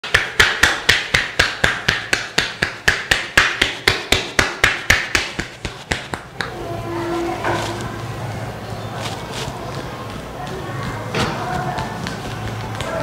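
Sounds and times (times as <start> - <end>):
hands slapping a head: 0.0 - 6.6.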